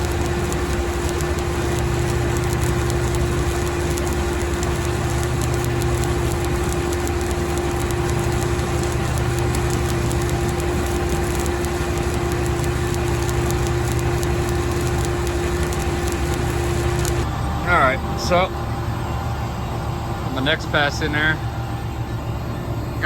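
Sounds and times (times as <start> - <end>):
welding arc crackling: 0.0 - 17.3
engine humming: 0.0 - 23.0.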